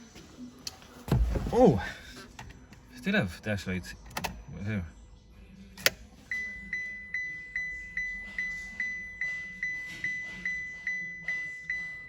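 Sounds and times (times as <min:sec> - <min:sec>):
car warning chime beeping: 0:06.3 - 0:12.0.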